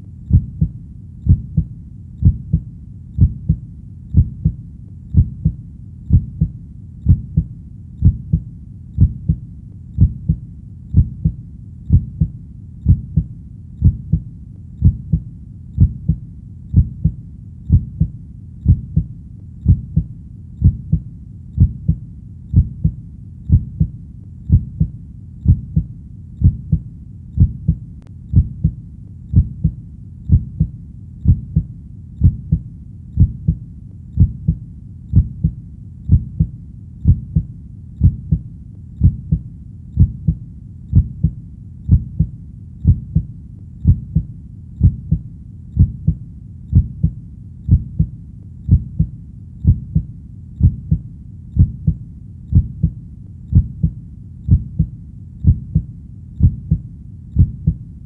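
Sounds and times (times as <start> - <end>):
heartbeat thumps: 0.0 - 57.9.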